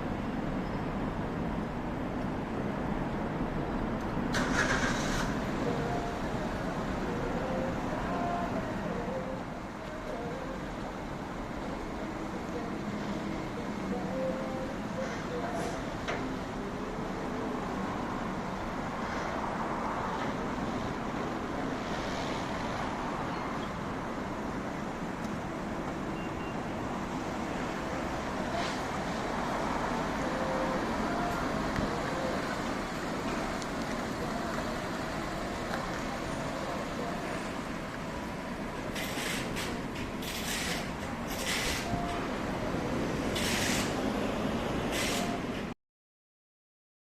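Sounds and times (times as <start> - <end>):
car road and engine noise: 0.0 - 45.8
short bursts of hiss: 44.9 - 45.4.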